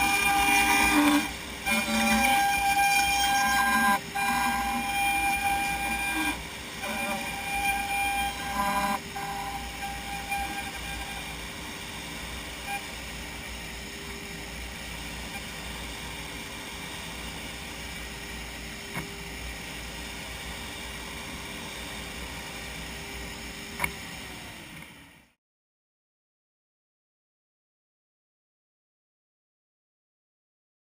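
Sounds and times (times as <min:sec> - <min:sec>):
machining centre humming: 0:00.0 - 0:25.3.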